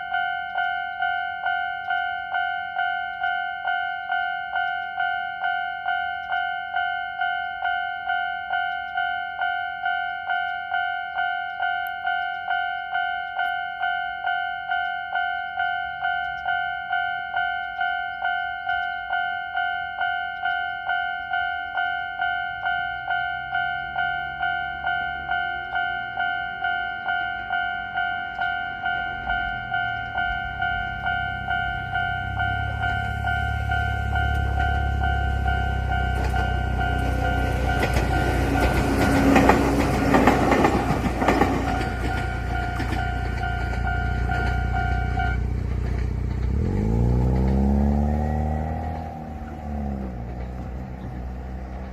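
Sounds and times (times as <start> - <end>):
level crossing warning bell: 0.0 - 51.9
train rumble: 23.0 - 51.9.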